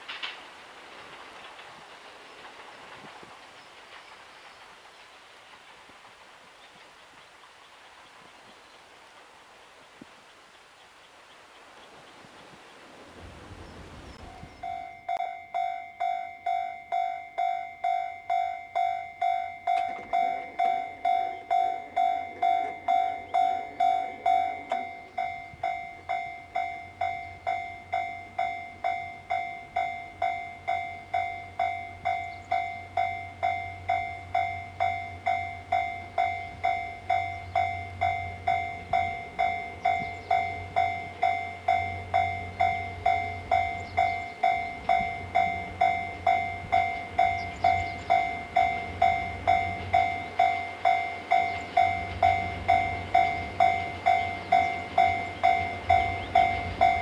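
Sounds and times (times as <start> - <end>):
level crossing warning bell: 14.2 - 57.0.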